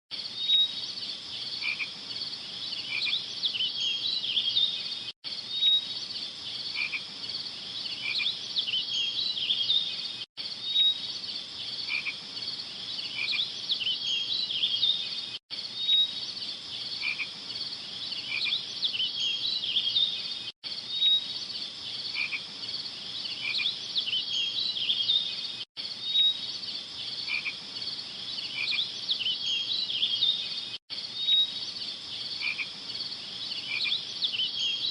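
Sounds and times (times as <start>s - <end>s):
insects chirping and trilling: 0.2s - 34.9s
frogs calling: 1.2s - 5.0s, 6.5s - 9.9s, 11.7s - 15.1s, 15.8s - 21.2s, 21.9s - 25.4s, 27.1s - 34.9s.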